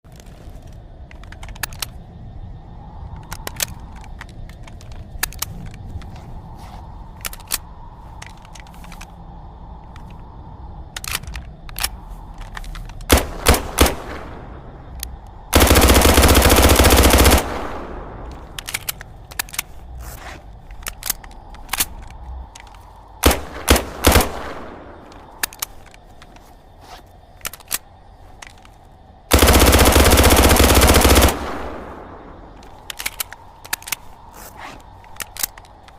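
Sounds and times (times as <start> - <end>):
scattered clicks: 0.1 - 2.2, 2.9 - 6.3, 7.0 - 35.9
submachine gun firing: 15.6 - 17.9, 29.3 - 32.1.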